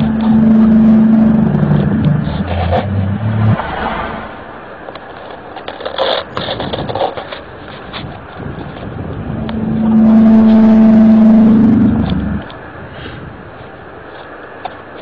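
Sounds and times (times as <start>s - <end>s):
deep horn-like low tones: 0.0s - 4.2s, 9.1s - 12.5s
outdoor background noise: 0.0s - 15.0s.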